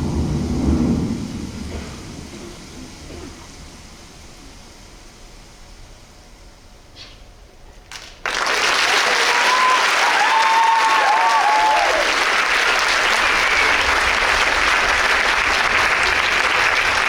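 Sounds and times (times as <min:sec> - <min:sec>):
audience applause: 0:07.9 - 0:17.0.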